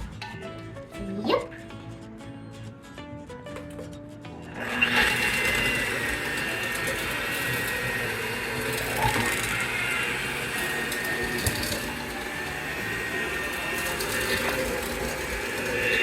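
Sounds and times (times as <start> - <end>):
electric mixer whining: 4.5 - 16.0.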